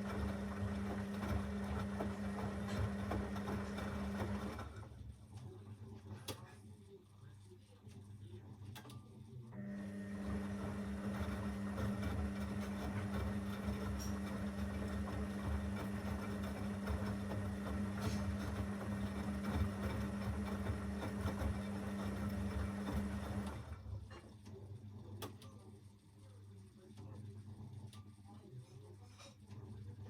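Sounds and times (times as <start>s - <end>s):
washing machine humming and rushing: 0.0s - 6.3s, 9.6s - 25.4s.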